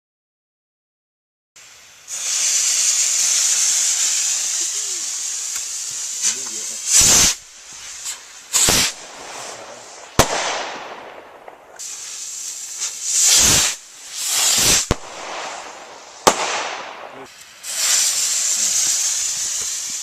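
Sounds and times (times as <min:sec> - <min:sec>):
crackling hiss: 0:01.6 - 0:20.0
rockets whooshing up: 0:01.6 - 0:20.0
sharp bangs: 0:06.3 - 0:12.2, 0:12.8 - 0:17.3.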